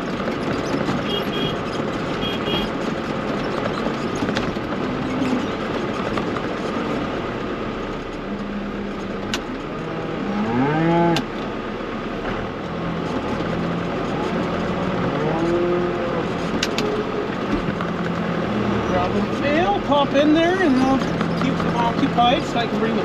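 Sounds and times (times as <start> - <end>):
tractor engine running: 0.0 - 23.0
cow mooing: 9.7 - 11.3, 15.0 - 16.3.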